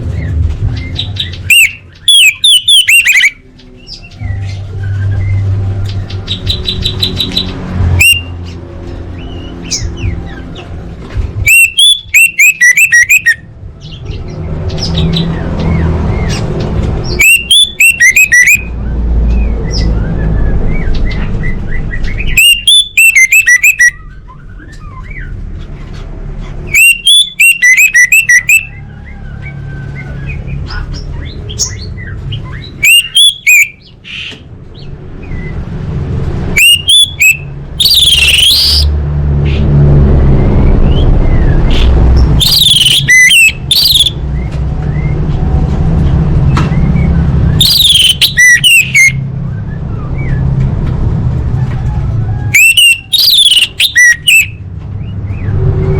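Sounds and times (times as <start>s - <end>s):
sweeping high bird call: 36.6s - 38.9s, 41.0s - 44.2s, 47.5s - 49.2s, 52.5s - 54.6s.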